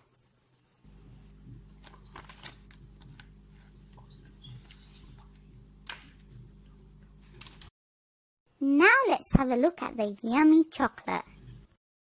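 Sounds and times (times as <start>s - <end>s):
low electrical hum: 0.0s - 7.7s.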